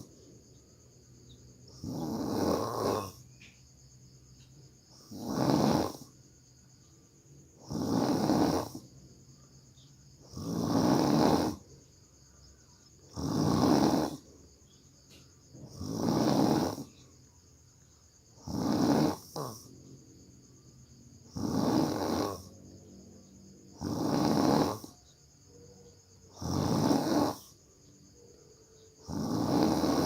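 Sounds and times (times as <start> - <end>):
person snoring heavily: 1.7 - 3.2, 4.9 - 6.1, 7.6 - 8.9, 10.2 - 11.6, 13.1 - 14.3, 15.6 - 17.0, 18.4 - 19.7, 21.2 - 22.5, 23.8 - 24.9, 26.3 - 27.6, 29.0 - 30.0.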